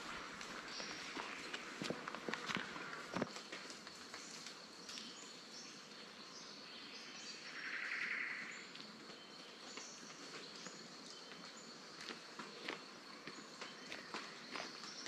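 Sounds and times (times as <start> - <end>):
soft footsteps: 0.0 - 5.1, 8.7 - 15.0
insect drone: 0.0 - 15.0.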